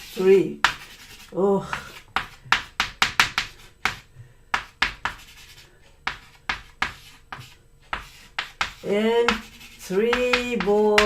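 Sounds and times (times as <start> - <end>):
scratchy strokes on a board: 0.0 - 11.0.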